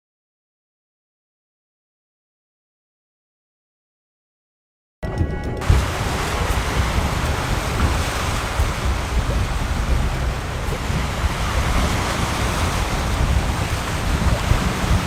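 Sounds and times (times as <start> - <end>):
wind buffeting microphone: 5.6 - 15.0.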